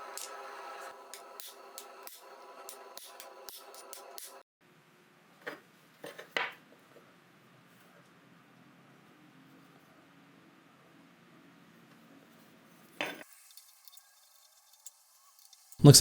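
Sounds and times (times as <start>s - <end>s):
hammer striking steel on anvil: 1.1s - 4.4s.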